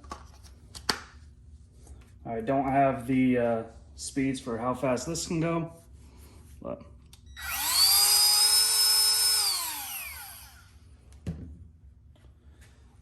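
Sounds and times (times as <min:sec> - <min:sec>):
rotary tool motor whining: 0:07.3 - 0:10.8.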